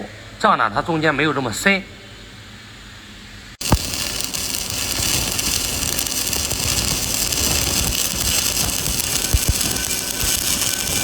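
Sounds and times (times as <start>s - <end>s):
welding arc crackling hiss: 3.6s - 11.0s.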